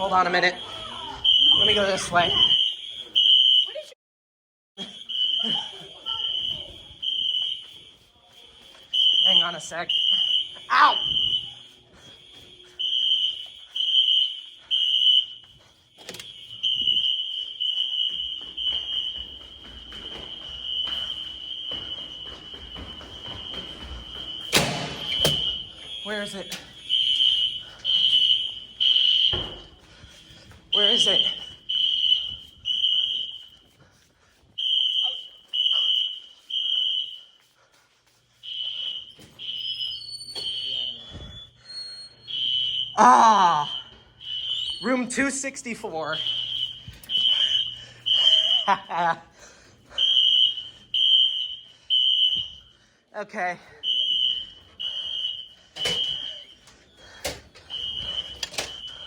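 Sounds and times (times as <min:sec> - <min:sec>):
fire alarm beeping: 0:00.0 - 0:04.0, 0:04.8 - 0:59.0.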